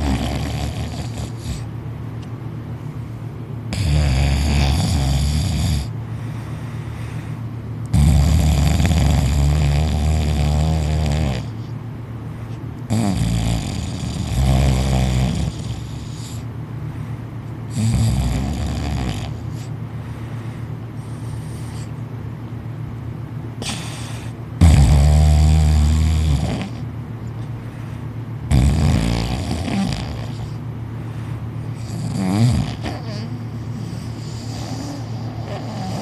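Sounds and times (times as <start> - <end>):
man snoring loudly: 0.0 - 1.7, 3.7 - 5.9, 7.9 - 11.6, 12.9 - 16.4, 17.7 - 19.4, 24.6 - 26.8, 28.5 - 30.5, 31.8 - 36.0.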